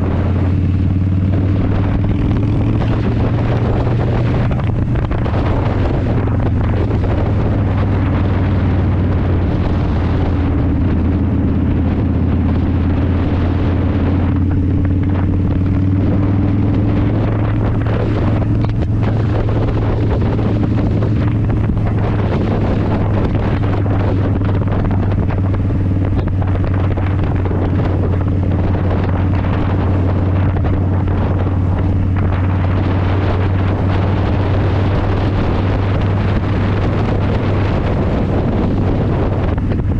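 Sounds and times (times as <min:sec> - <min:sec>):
motorcycle engine drone: 0:00.0 - 0:39.9
wind rushing over microphone: 0:00.0 - 0:39.9.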